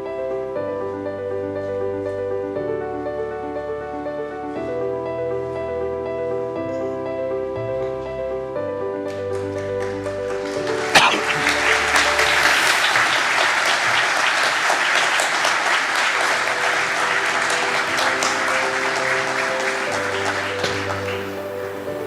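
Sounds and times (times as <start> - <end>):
slow instrumental music: 0.0 - 22.0
audience applause: 9.4 - 22.0.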